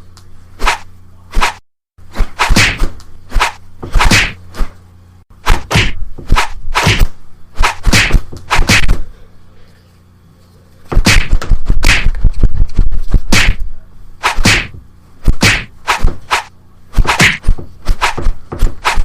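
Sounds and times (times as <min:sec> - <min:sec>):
punch sound effects: 0:02.2 - 0:04.4, 0:05.4 - 0:09.0, 0:10.9 - 0:12.2, 0:13.3 - 0:13.6, 0:14.2 - 0:19.0.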